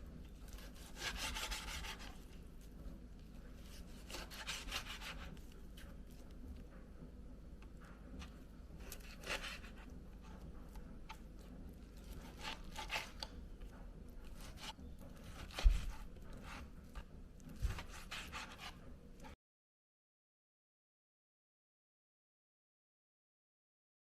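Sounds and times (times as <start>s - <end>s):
knife slicing on cutting board: 0.5s - 2.2s, 3.6s - 5.3s, 8.8s - 9.9s, 12.0s - 13.4s, 14.3s - 17.0s, 17.6s - 19.3s.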